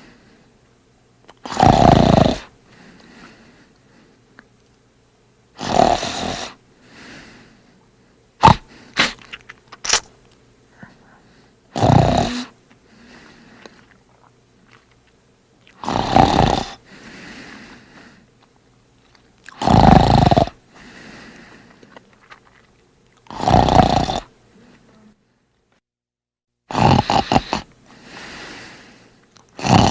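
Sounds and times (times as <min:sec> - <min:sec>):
man snoring loudly: 0:01.4 - 0:02.5, 0:05.6 - 0:06.6, 0:08.4 - 0:08.7, 0:11.7 - 0:12.5, 0:15.8 - 0:16.8, 0:19.6 - 0:20.6, 0:23.3 - 0:24.3, 0:26.7 - 0:27.7, 0:29.6 - 0:29.9
soft breath out: 0:02.7 - 0:04.2, 0:16.9 - 0:18.3, 0:27.4 - 0:29.2.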